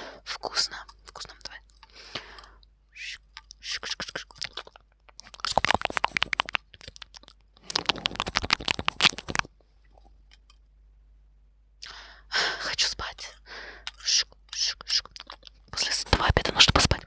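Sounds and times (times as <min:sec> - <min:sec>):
close crunching and crackling: 0:00.6 - 0:10.6, 0:13.8 - 0:17.0.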